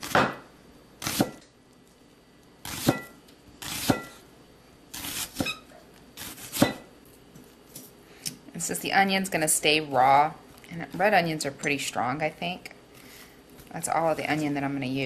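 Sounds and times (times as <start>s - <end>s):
knife chopping on cutting board: 0.0s - 0.4s, 1.0s - 1.4s, 2.6s - 4.2s, 5.0s - 5.6s, 6.2s - 6.9s.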